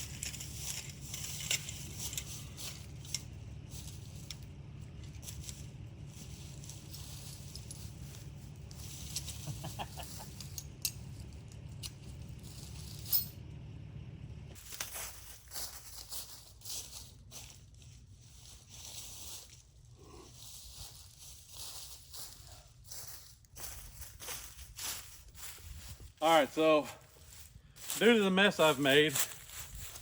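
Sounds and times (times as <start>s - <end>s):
steady low hum: 0.0s - 30.0s
light clicks and clinks: 9.0s - 13.4s.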